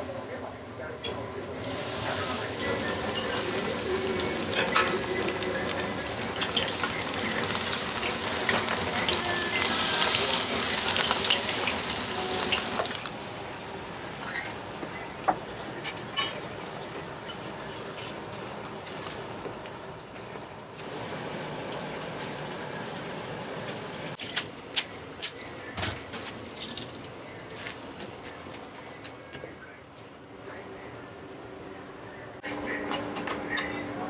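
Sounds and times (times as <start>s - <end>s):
tempura sizzling in hot oil: 1.5s - 14.7s.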